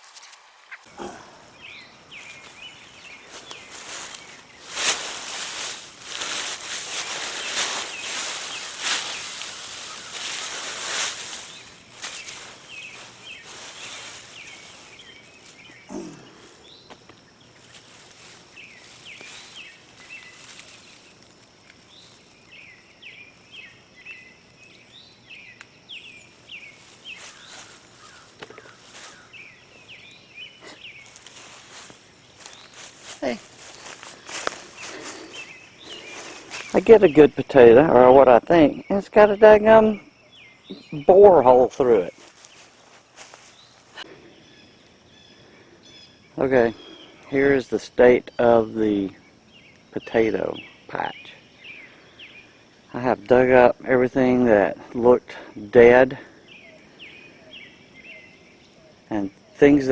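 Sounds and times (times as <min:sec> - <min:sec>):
small birds chirping: 0:00.2 - 0:59.9
plants rustling and scraping in soil: 0:01.6 - 0:24.0, 0:25.9 - 0:37.6, 0:40.7 - 0:44.1.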